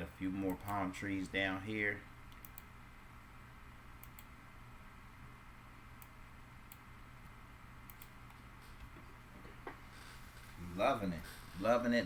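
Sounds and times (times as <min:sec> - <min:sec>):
low electrical hum: 0:00.0 - 0:12.0
faint computer mouse clicks: 0:02.3 - 0:02.7, 0:04.0 - 0:04.3, 0:07.9 - 0:08.4.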